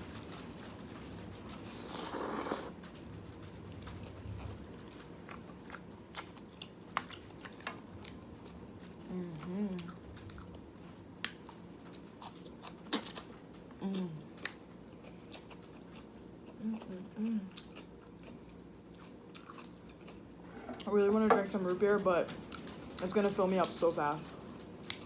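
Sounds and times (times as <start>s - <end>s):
person slurping noodles: 1.7s - 2.7s
person humming: 9.1s - 9.9s, 13.8s - 14.2s, 16.6s - 17.5s.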